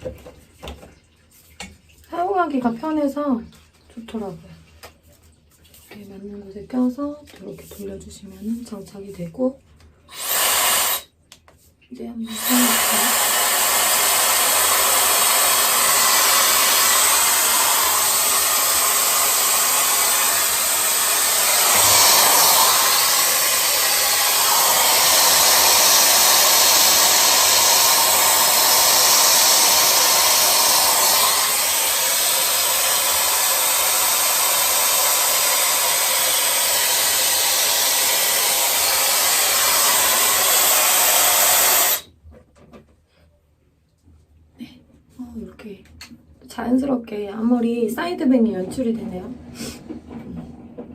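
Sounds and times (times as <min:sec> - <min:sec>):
hot-air styler blowing: 0:10.1 - 0:11.1, 0:12.3 - 0:42.1.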